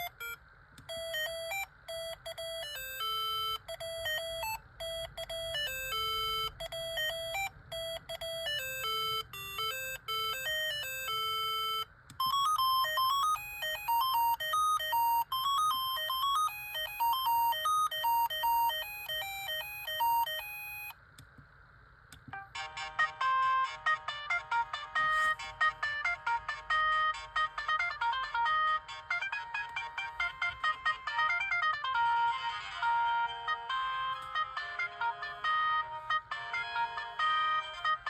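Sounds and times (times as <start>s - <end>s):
phone ringtone melodies: 0.0s - 20.9s, 22.4s - 38.0s.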